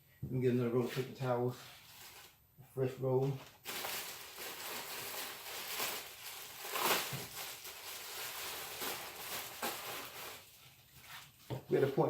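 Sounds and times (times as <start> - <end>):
paper towels crinkling: 3.6 - 12.0.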